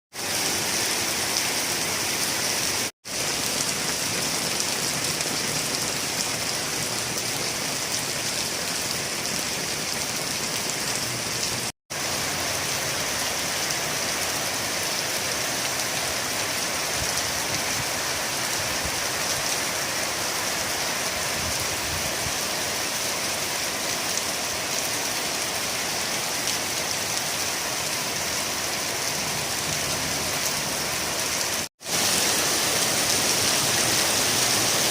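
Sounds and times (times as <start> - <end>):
steady rain falling: 0.1 - 34.9.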